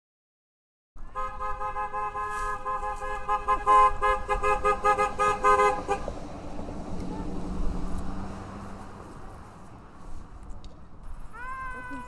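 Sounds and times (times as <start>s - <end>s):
car horns honking: 1.0s - 6.2s.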